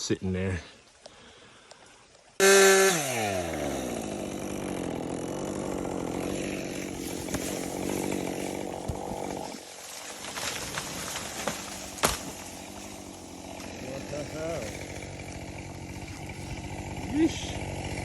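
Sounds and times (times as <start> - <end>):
chainsaw cutting wood: 2.4 - 18.0.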